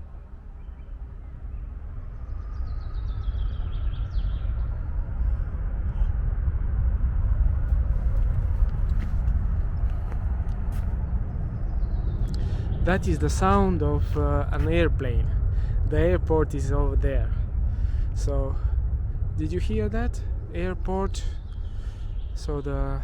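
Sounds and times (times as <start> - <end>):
airplane taking off rumble: 0.0 - 23.0
bird chirping: 0.6 - 5.1, 11.3 - 15.2, 19.4 - 23.0.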